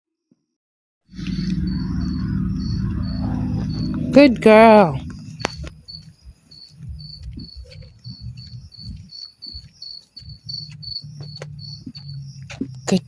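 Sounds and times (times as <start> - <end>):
low rustling: 1.1 - 8.9
cricket chirping: 1.1 - 13.0.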